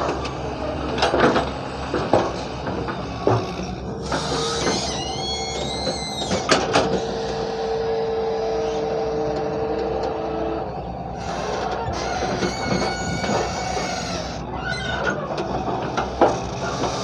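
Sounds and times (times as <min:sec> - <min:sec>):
excavator running: 0:00.0 - 0:17.0
high squealing tones: 0:11.1 - 0:15.3.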